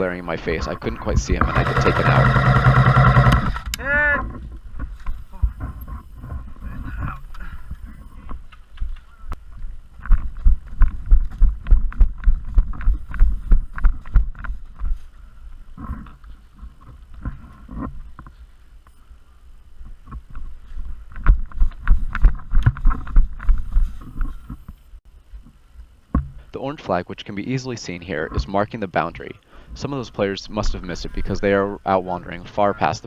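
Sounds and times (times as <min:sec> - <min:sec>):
footsteps and gear jostling: 0:04.3 - 0:18.7, 0:19.8 - 0:24.9.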